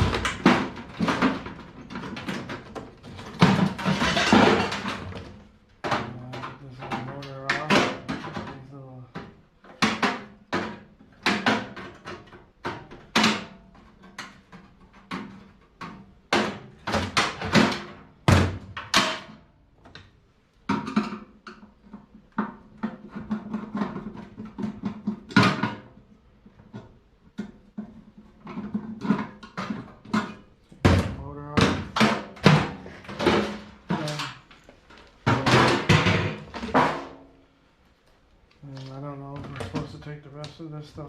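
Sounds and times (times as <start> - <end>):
metal clanking and knocking: 0.0 - 19.4, 26.6 - 37.3.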